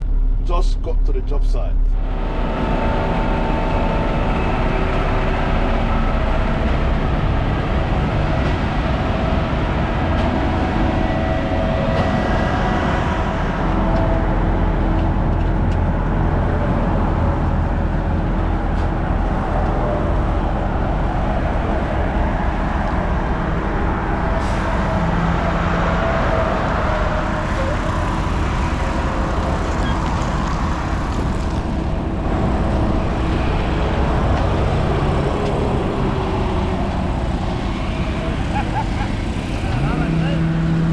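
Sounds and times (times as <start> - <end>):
truck diesel engine running: 0.0 - 40.9.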